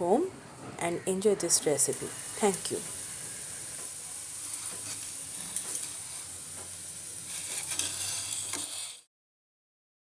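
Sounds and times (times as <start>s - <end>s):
food deep-frying in hot oil: 1.0s - 9.1s.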